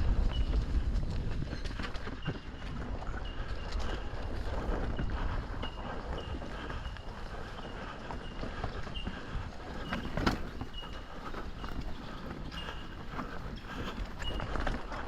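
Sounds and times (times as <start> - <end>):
bike tyres on dirt and rocks: 0.0 - 15.0
bike knocks and rattles: 9.7 - 14.4.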